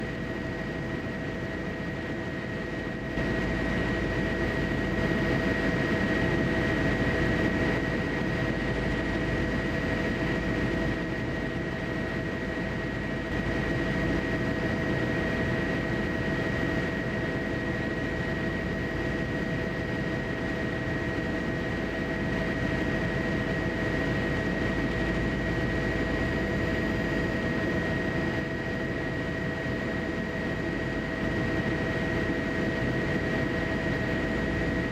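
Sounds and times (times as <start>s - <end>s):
airplane engine rumble and whine: 0.0s - 34.9s.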